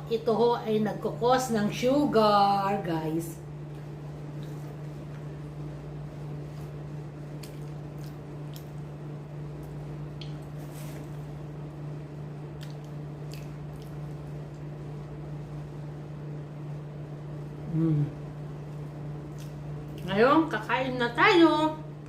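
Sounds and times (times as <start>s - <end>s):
steady low hum: 0.0s - 22.0s
person chewing: 6.2s - 11.3s, 12.4s - 14.7s, 19.2s - 20.0s
wet mouth clicks: 12.6s - 14.0s.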